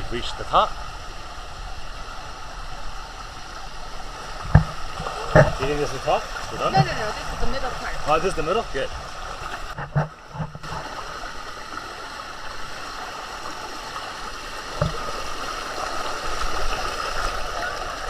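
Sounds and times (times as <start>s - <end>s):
waterfall rushing over rock: 0.0s - 9.2s
short knocks: 4.4s - 5.8s.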